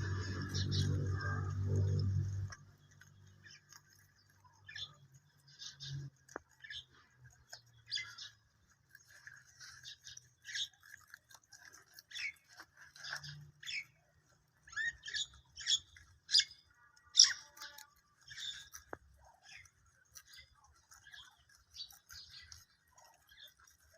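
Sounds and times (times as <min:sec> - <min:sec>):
rabbits chewing grass: 0:00.0 - 0:23.9
small birds chirping: 0:00.0 - 0:23.9.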